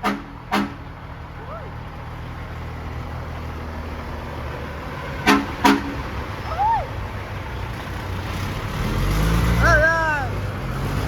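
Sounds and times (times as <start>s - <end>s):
truck horn toots: 0.0s - 0.9s, 5.2s - 6.1s
low rumble of passing traffic: 0.0s - 11.0s.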